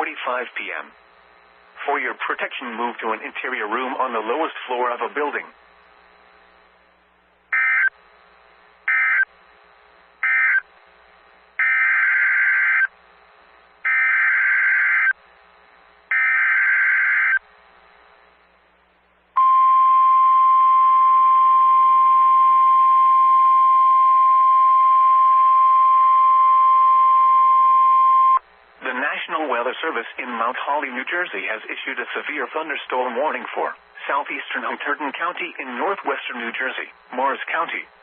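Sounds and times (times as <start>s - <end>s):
steady warning alarm tone: 7.5s - 8.0s, 8.8s - 9.4s, 10.2s - 10.7s, 11.5s - 13.0s, 13.8s - 15.2s, 16.0s - 17.5s, 19.4s - 28.4s.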